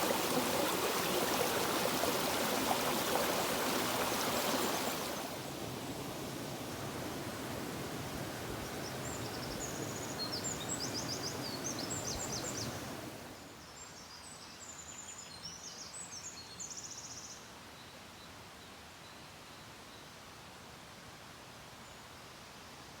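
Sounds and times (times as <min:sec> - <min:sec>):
stream rushing: 0:00.0 - 0:13.4
songbirds chirping and trilling: 0:08.7 - 0:13.1.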